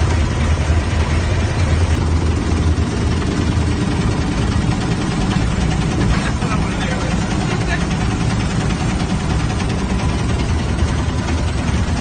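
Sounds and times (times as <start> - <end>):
truck engine low rumble: 0.0 - 12.0.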